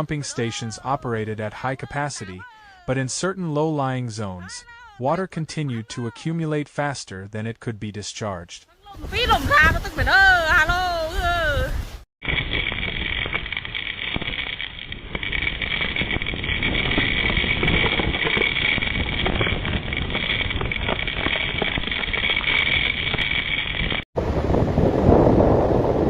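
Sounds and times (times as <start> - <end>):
rushing storm wind: 9.0 - 26.0.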